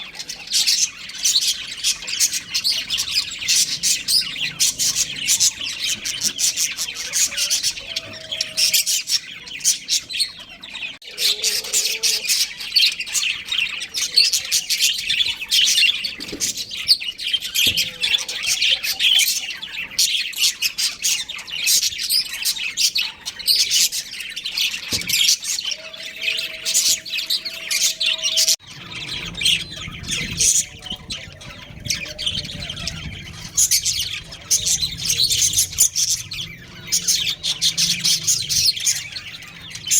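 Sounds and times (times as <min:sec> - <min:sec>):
budgerigars chattering: 0:00.0 - 0:39.9
low background rumble: 0:28.6 - 0:39.9.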